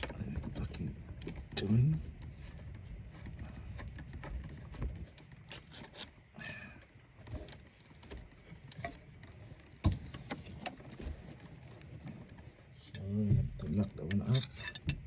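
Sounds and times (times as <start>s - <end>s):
tools and metal parts clicking: 12.9s - 15.0s.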